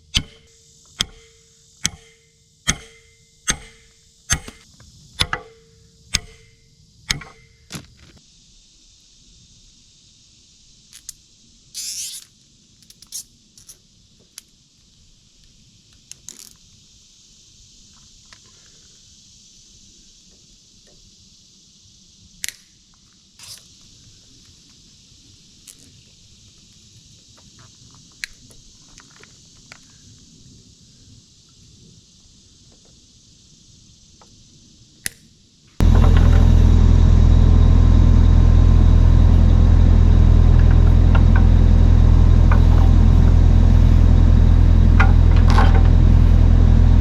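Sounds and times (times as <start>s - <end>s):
steady high hiss: 0.0s - 47.0s
ringing metal strikes: 0.1s - 4.6s, 5.2s - 7.7s
tool clicks and taps: 1.0s - 4.6s.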